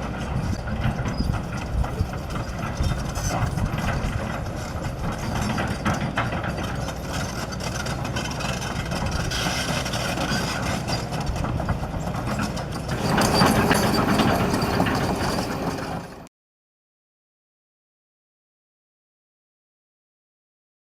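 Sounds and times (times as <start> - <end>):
excavator diesel engine running: 0.0 - 16.3.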